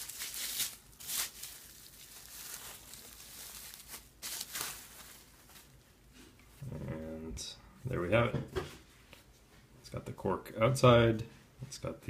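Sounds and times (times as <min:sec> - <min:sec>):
packaging tearing: 0:00.0 - 0:05.3
packaging rustling and crinkling: 0:00.0 - 0:05.9.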